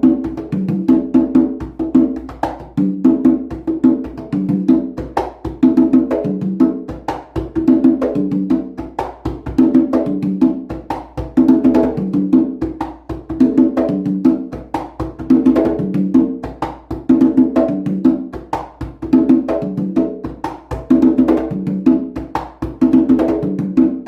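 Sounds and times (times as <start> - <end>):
hand drums in repeating rhythm: 0.0 - 24.0.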